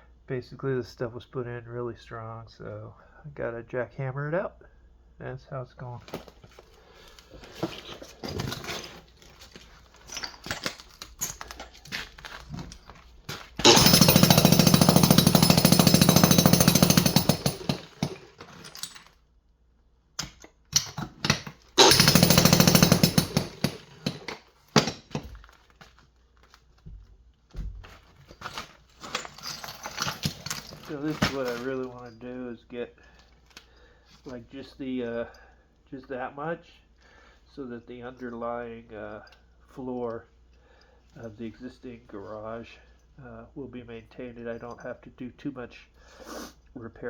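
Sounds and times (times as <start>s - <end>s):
hammer drill hammering: 13.6s - 18.8s, 20.2s - 25.3s.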